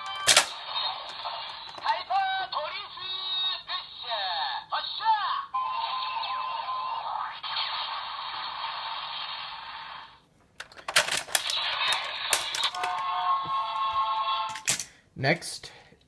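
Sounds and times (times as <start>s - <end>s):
plastic toy clicks: 10.6s - 13.0s
tinny electronic toy sound effect: 11.4s - 14.6s.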